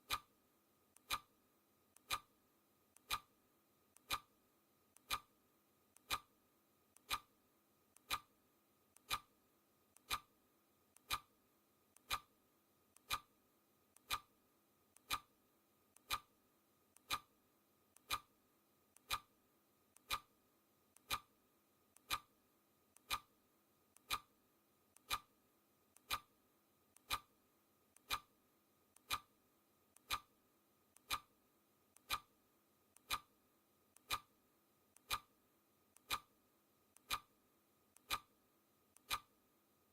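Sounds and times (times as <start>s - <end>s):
clock ticking: 0.0s - 0.3s, 1.0s - 1.3s, 2.0s - 2.3s, 2.9s - 3.3s, 3.9s - 4.3s, 4.9s - 5.3s, 5.9s - 6.3s, 6.9s - 7.3s, 7.9s - 8.3s, 8.9s - 9.3s, 9.9s - 10.3s, 10.9s - 11.3s, 11.9s - 12.3s, 12.9s - 13.3s, 13.9s - 14.3s, 14.9s - 15.3s, 15.9s - 16.3s, 16.9s - 17.3s, 17.9s - 18.3s, 18.9s - 20.3s, 20.9s - 21.3s, 22.0s - 22.3s, 22.9s - 23.3s, 24.0s - 24.3s, 25.0s - 25.3s, 25.9s - 26.3s, 27.0s - 27.3s, 28.0s - 28.3s, 29.0s - 29.4s, 30.0s - 30.3s, 31.0s - 31.3s, 32.0s - 32.4s, 33.0s - 33.4s, 34.0s - 34.3s, 35.0s - 35.4s, 36.0s - 36.4s, 37.0s - 37.4s, 38.0s - 38.4s, 39.0s - 39.4s.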